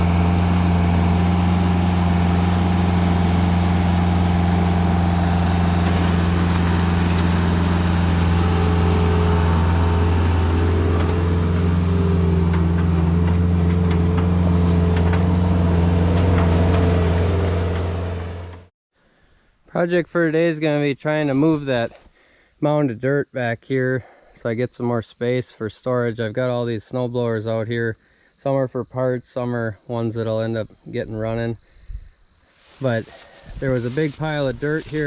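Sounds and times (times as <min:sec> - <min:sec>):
diesel engine running: 0:00.0 - 0:18.7, 0:32.6 - 0:35.0.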